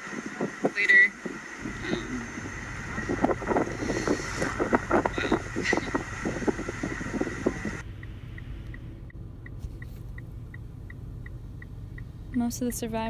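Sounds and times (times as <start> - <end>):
wind buffeting microphone: 0.0 - 7.9
steady ticking: 0.3 - 13.0.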